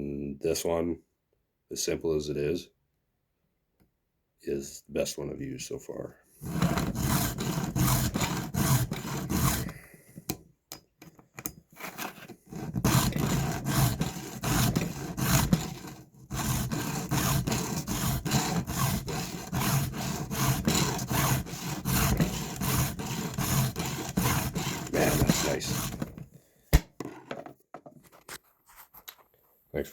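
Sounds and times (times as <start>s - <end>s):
file rasping on chainsaw chain: 6.4s - 9.8s, 11.8s - 26.2s.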